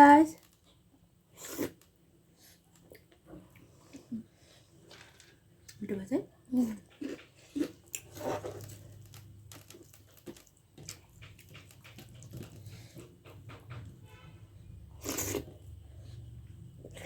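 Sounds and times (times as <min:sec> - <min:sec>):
person chewing: 0:06.9 - 0:12.8, 0:15.0 - 0:15.7.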